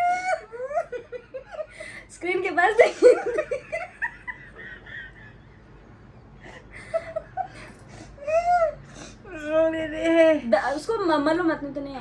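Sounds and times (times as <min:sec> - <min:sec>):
women giggling: 0:00.0 - 0:02.0, 0:02.8 - 0:05.7, 0:06.5 - 0:08.8.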